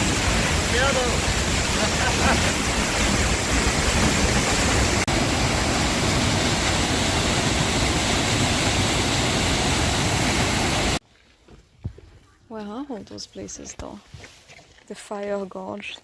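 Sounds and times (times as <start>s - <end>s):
waterfall rushing: 0.0s - 11.0s.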